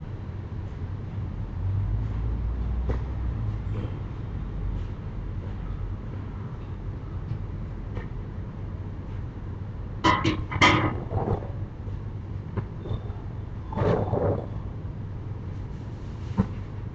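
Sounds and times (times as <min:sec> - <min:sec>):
low rumble: 0:09.6 - 0:15.9.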